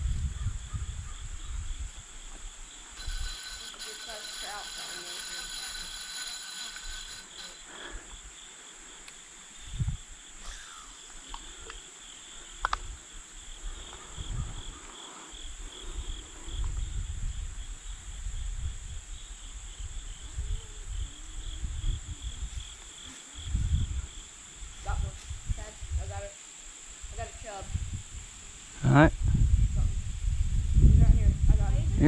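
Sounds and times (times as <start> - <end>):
low rumbling microphone noise: 0.0 - 2.8, 27.0 - 32.0
insects chirping: 0.0 - 32.0.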